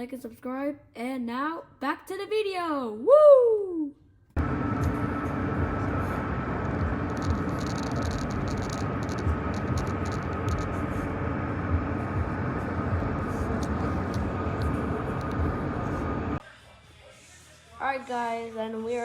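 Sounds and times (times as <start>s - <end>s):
rumbling hissing noise: 4.4s - 16.4s
faint constant hum: 4.4s - 19.0s.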